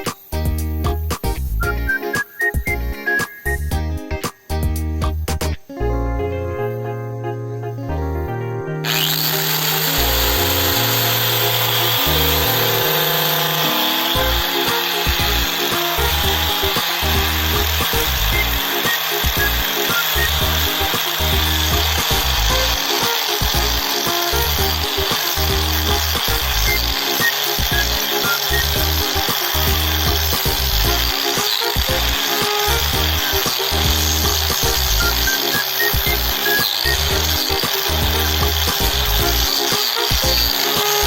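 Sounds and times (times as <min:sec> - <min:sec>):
background music: 0:00.0 - 0:41.0
disc grinder grinding wood: 0:08.9 - 0:41.0.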